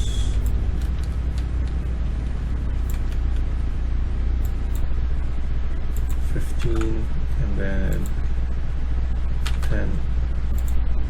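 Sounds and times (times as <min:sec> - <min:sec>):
low background hum: 0:00.0 - 0:11.0.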